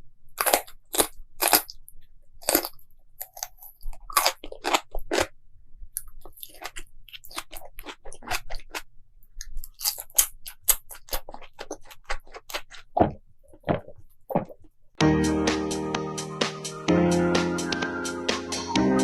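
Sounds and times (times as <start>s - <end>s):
chewing crunchy food: 0.3s - 14.8s.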